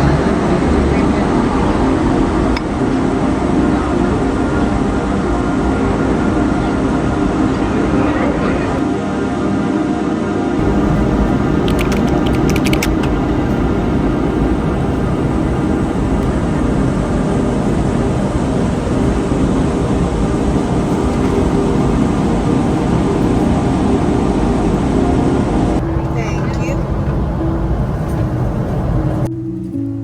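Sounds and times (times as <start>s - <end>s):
vehicle engine rumbling: 0.0s - 2.5s, 10.6s - 29.7s
faint clicks: 11.2s - 13.6s.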